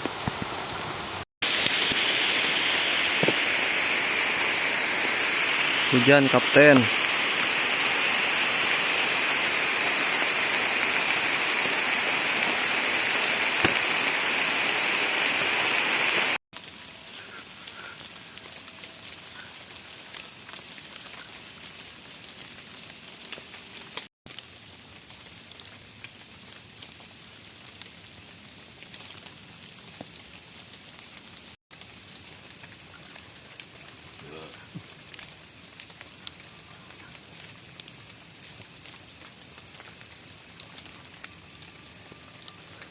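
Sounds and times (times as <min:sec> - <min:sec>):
heavy rain hissing: 0:00.0 - 0:21.8, 0:32.8 - 0:37.8.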